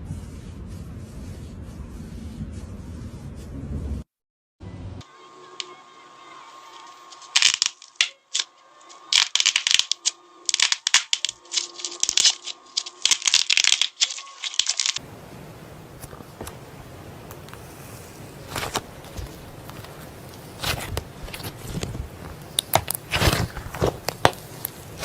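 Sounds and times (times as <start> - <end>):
slime crackling and popping: 7.1 - 15.0, 18.5 - 25.0.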